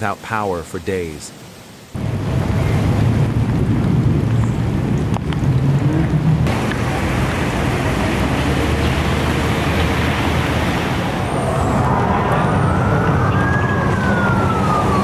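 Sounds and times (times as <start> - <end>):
storm wind buffeting microphone: 2.0 - 15.0
siren wailing: 10.9 - 15.0.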